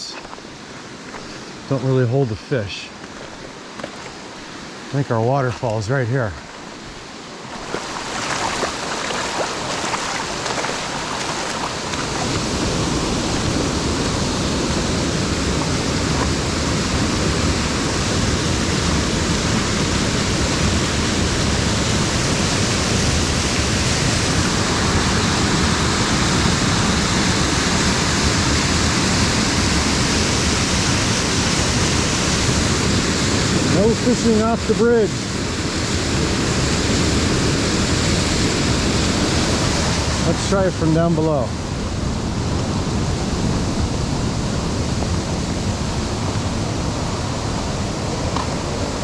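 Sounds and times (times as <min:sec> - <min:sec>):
waterfall rushing: 0:04.3 - 0:41.8.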